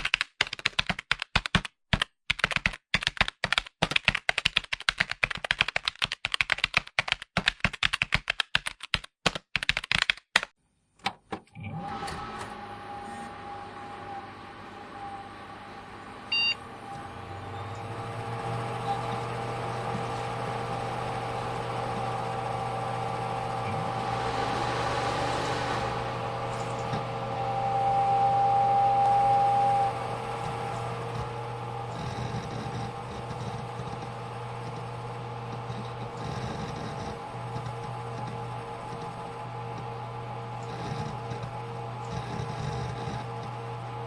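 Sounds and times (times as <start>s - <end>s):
electrical hum: 11.5s - 44.0s
computer fan whirring: 11.6s - 44.0s
high whine: 12.6s - 44.0s
computer beep: 16.3s - 16.6s.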